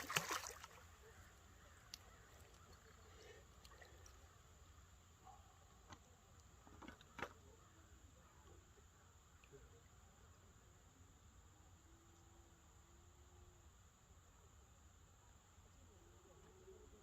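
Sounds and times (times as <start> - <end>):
faint short clicks: 1.8 - 2.1.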